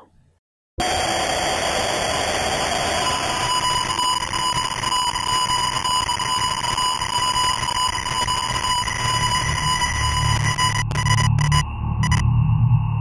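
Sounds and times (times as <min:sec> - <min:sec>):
high ringing tone: 0:02.6 - 0:12.3.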